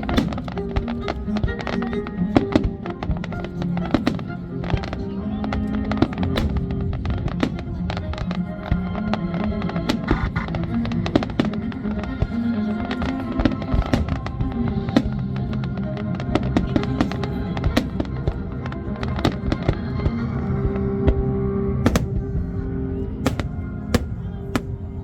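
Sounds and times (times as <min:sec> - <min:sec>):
fireworks bangs and crackles: 0:00.0 - 0:01.7, 0:05.6 - 0:08.4, 0:21.8 - 0:25.0
steady music: 0:21.8 - 0:25.0.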